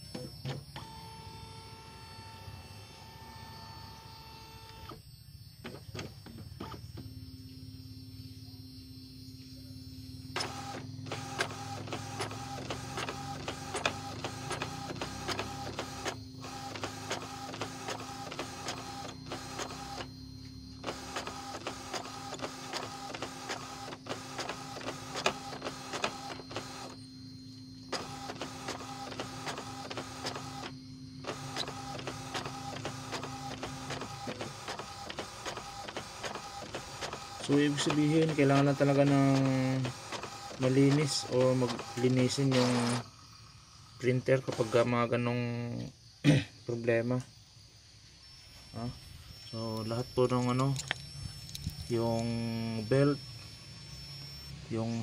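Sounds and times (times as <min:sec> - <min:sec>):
printer hum: 0:00.0 - 0:45.9, 0:48.2 - 0:55.0
printer carriage clicking: 0:10.4 - 0:19.8, 0:20.9 - 0:26.8, 0:31.3 - 0:43.0.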